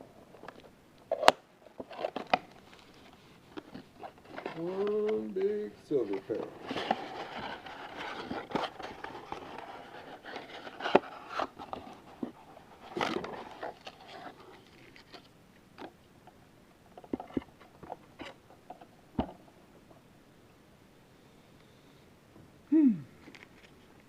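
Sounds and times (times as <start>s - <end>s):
cards rustling and clicking: 0.5s - 15.3s
cards being shuffled: 1.1s - 15.3s.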